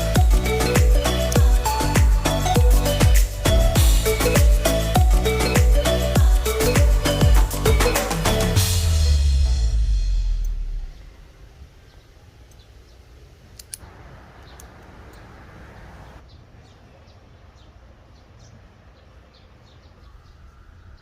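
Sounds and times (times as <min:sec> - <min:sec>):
small birds chirping: 0:10.7 - 0:21.0
sharp clicks: 0:13.5 - 0:15.3.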